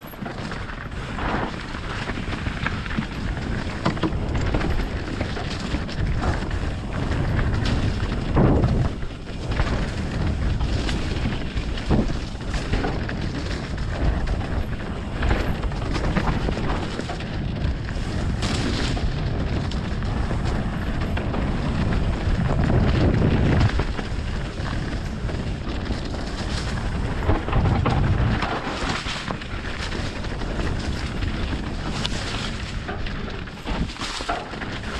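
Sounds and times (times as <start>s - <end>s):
bike rattling: 0.0s - 34.9s
bike tyre roar: 0.0s - 34.9s
wind buffeting microphone: 0.0s - 34.9s
bike knocking over bumps: 0.1s - 34.9s.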